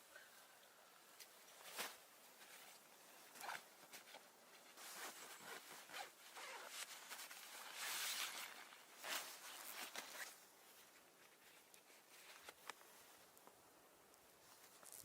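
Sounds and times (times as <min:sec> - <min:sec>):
fabric rustling: 0:01.5 - 0:13.4
zipper rasping: 0:04.8 - 0:10.2.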